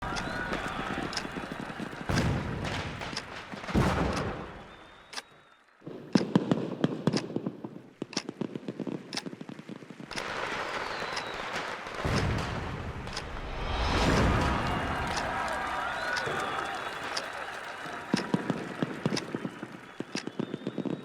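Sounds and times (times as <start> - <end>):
firework bang: 0.0 - 4.8, 10.4 - 17.5
firecracker cracks: 0.0 - 5.5, 6.1 - 21.0
firework crackling: 0.0 - 5.5, 7.4 - 21.0
firework whistle: 0.0 - 5.7, 10.1 - 21.0.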